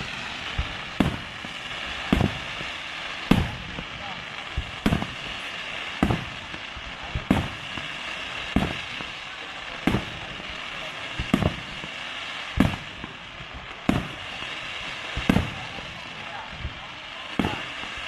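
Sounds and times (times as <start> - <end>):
fireworks bangs: 0.0 - 18.0
steady background hiss: 0.0 - 18.0.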